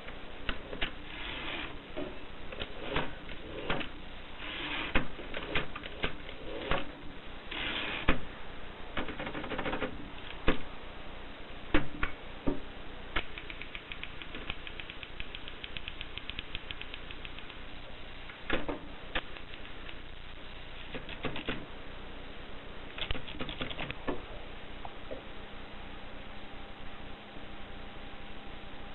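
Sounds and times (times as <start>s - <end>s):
loud typewriter clacks: 9.0s - 10.0s, 23.0s - 24.0s
fast run of small clicks: 13.2s - 18.4s, 19.1s - 20.1s.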